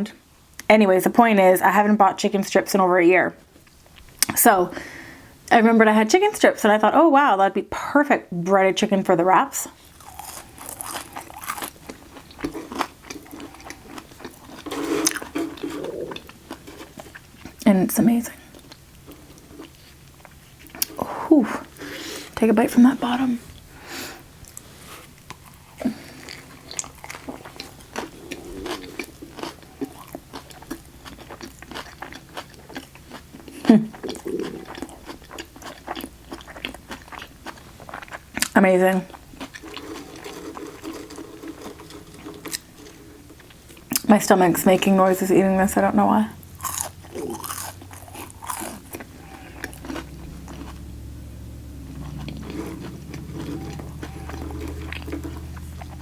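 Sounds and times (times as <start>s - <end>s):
crunchy chewing: 9.8s - 17.6s, 18.5s - 21.0s, 24.4s - 44.0s, 46.4s - 56.0s
low steady rumble: 13.0s - 56.0s.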